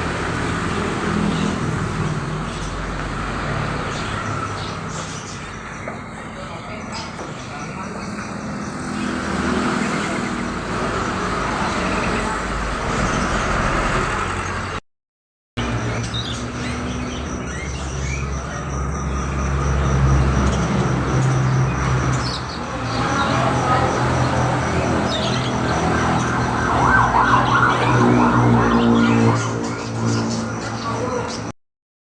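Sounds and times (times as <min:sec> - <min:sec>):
songbirds chirping: 0:00.0 - 0:14.8, 0:15.6 - 0:31.5
vehicle engine and road noise: 0:00.0 - 0:14.8, 0:15.6 - 0:31.6.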